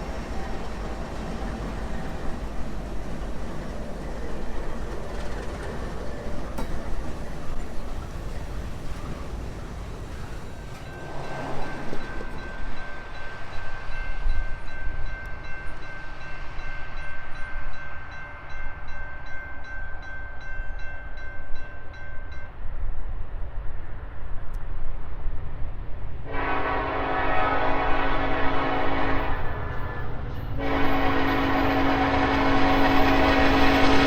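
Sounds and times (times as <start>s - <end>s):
diesel freight train rumble: 0.0s - 18.6s, 23.8s - 34.0s
locomotive air horn blasting: 26.3s - 30.0s, 30.6s - 34.0s.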